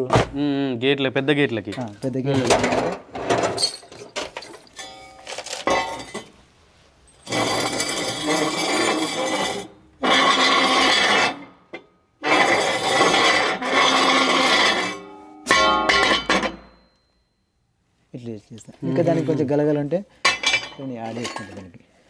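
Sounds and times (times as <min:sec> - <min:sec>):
metal scraping against metal: 0:07.1 - 0:17.0, 0:18.8 - 0:21.8.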